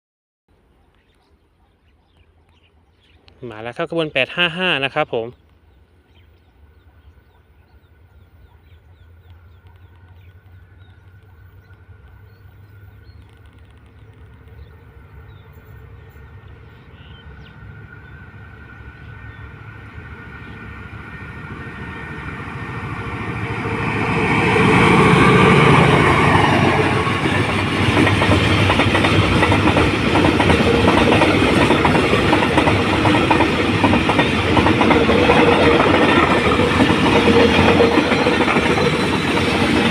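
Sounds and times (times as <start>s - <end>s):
freight train rumbling: 4.0s - 39.9s
train wheels clattering on rails: 23.1s - 39.9s.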